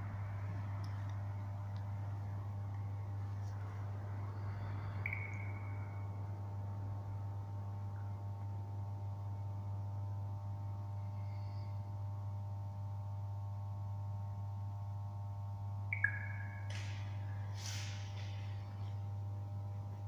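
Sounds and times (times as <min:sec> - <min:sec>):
steady hum with held tones: 0:00.0 - 0:20.0
faint short chirp: 0:04.3 - 0:06.3, 0:15.9 - 0:18.7.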